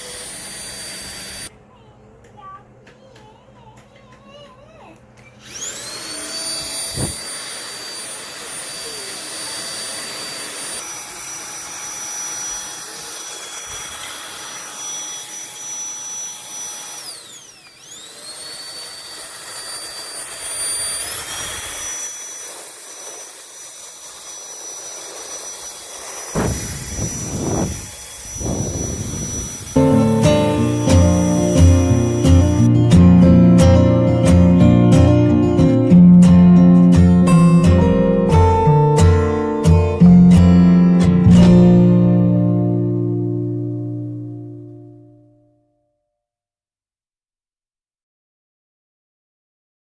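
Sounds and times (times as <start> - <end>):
vacuum motor whine: 0.0 - 1.5, 5.2 - 32.8.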